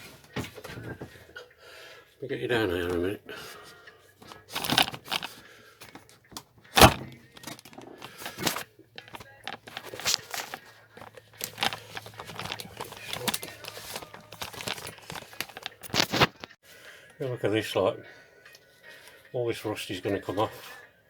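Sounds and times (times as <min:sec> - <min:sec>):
handling knocks and clicks: 0:04.2 - 0:16.5.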